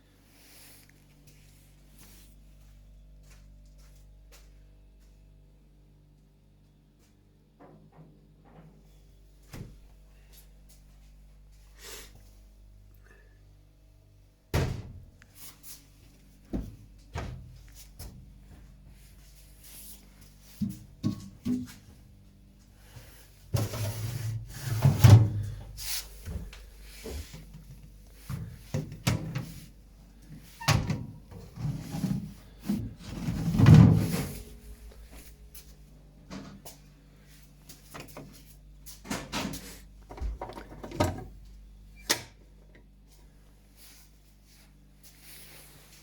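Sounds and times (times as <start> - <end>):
low steady hum: 0.0 - 39.2
refrigerator drawers opening and closing: 14.6 - 15.0, 23.5 - 26.5, 28.3 - 29.7, 30.4 - 35.1, 39.0 - 41.4.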